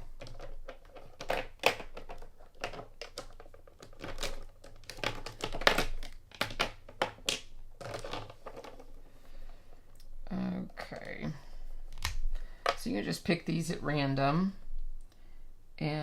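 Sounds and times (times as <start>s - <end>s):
plastic marker clicks and rustles: 0.0s - 8.9s.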